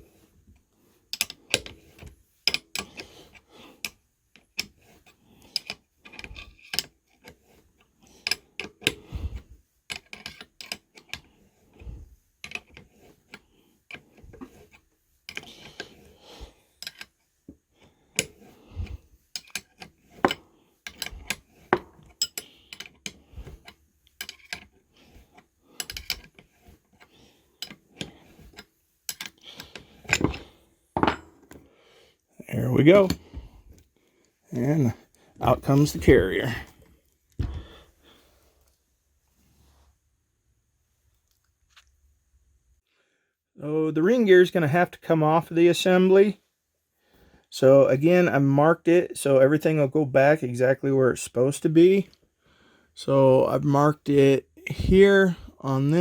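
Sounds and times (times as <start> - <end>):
hand tools clanking on metal: 18.2 - 23.0, 27.6 - 31.5.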